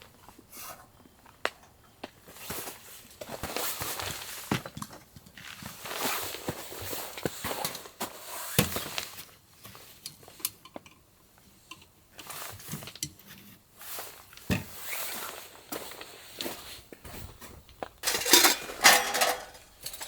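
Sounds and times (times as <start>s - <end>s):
rustling: 15.8s - 20.0s.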